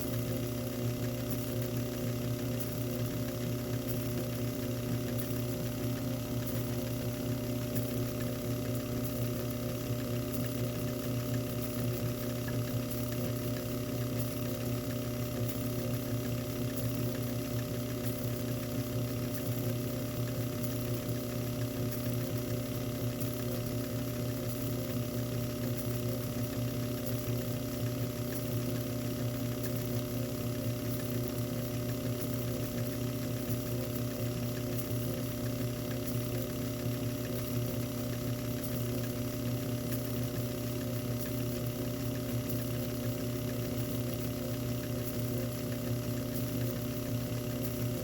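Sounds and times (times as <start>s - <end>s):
small lathe motor hum: 14.6s - 48.0s.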